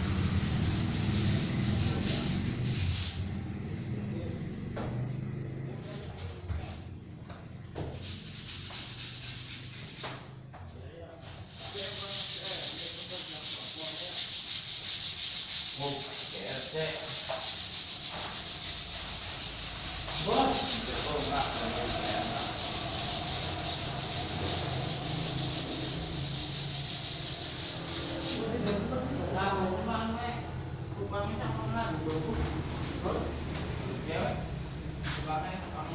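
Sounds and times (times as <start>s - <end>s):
sanding hiss: 0.0s - 3.2s, 8.0s - 10.2s, 11.5s - 28.5s.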